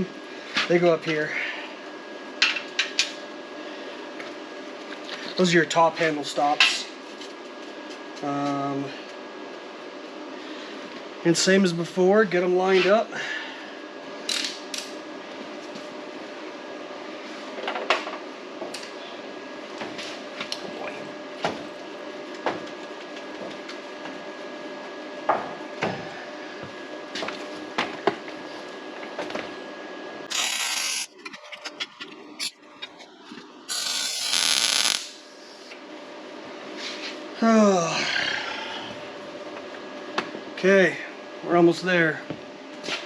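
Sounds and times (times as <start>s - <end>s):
steady hum: 30.0s - 40.0s
welding tack bursts: 30.3s - 31.1s, 33.7s - 35.2s.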